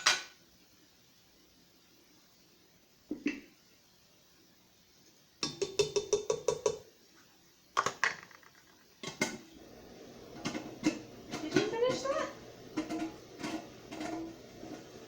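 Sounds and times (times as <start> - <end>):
utensil tapping cooking pot: 5.4 - 6.9, 10.2 - 15.0.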